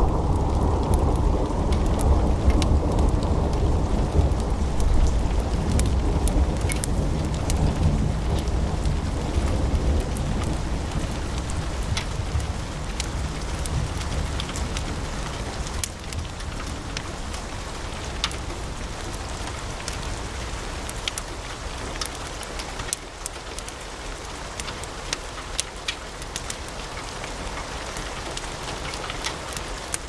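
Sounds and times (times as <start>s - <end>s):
low rumble: 0.0s - 19.9s
wood fire crackling and popping: 0.0s - 30.0s.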